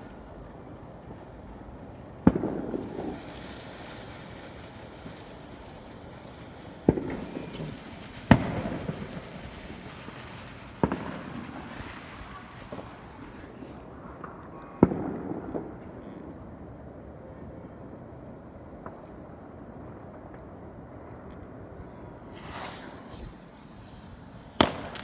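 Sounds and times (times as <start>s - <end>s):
fireworks bangs: 2.2s - 15.8s, 22.0s - 25.0s
crackling and echo: 3.2s - 16.4s
small pops: 6.9s - 16.4s, 22.2s - 25.0s.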